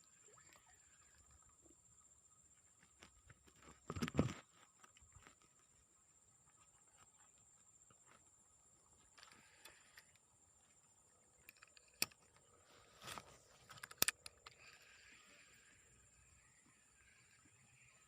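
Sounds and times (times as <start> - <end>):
steady high-pitched hiss: 0.0 - 18.0
handling clicks and knocks: 13.0 - 14.6.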